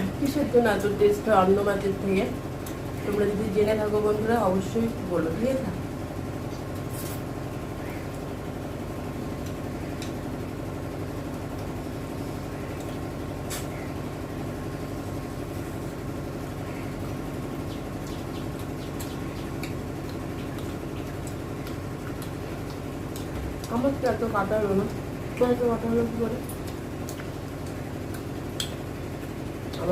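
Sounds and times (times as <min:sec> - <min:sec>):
steady mechanical hum: 0:00.0 - 0:29.9
eating clicks and smacks: 0:09.3 - 0:10.3, 0:17.6 - 0:24.0, 0:26.4 - 0:29.9.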